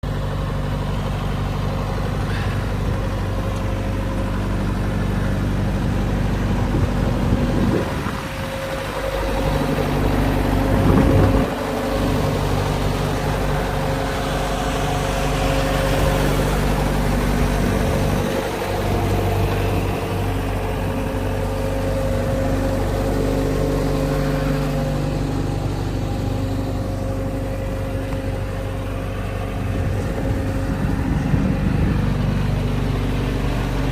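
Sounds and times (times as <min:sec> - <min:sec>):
diesel engine running: 0:00.0 - 0:33.9.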